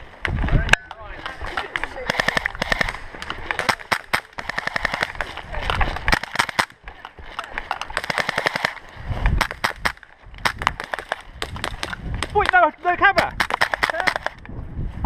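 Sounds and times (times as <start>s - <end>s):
airsoft pistols firing: 1.2s - 6.8s, 7.6s - 8.8s, 9.4s - 12.6s, 13.2s - 14.4s.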